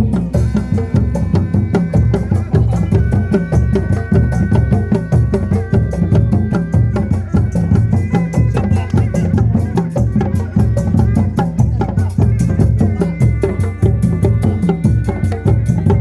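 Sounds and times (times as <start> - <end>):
fast dense drumming: 0.0 - 16.0.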